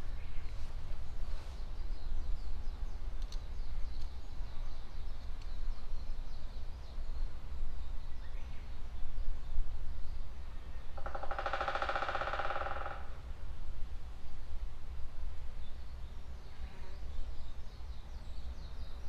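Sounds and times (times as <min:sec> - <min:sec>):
songbirds chirping: 0:00.0 - 0:11.3, 0:15.5 - 0:19.0.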